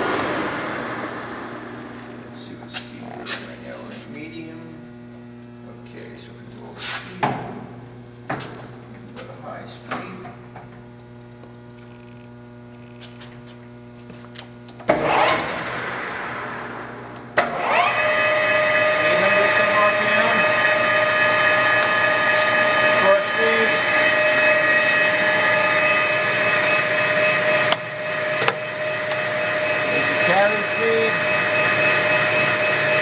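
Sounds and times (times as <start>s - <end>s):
lathe gear whine: 0.0s - 3.2s, 14.9s - 33.0s.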